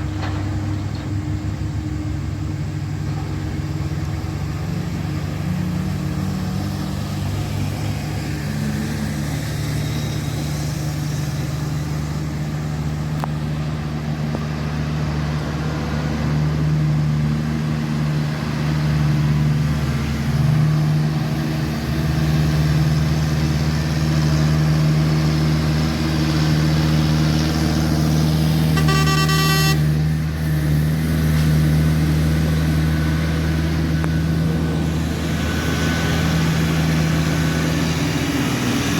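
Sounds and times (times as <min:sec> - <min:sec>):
diesel truck engine under load: 0:00.0 - 0:38.9
vehicle horn: 0:28.7 - 0:30.1.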